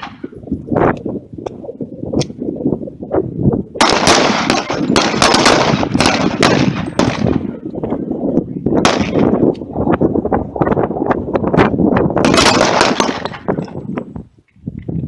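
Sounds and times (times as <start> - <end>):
rapid pistol shots: 3.8 - 7.5, 8.8 - 9.4, 12.2 - 13.5.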